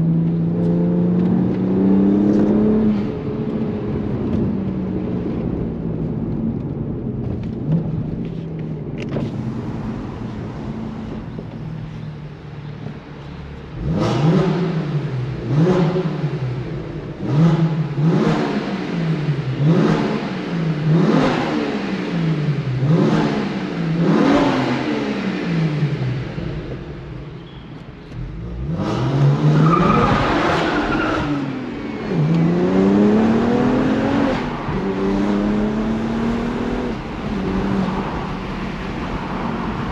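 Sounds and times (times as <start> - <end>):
car engine revving: 13.6 - 27.1, 28.1 - 39.9.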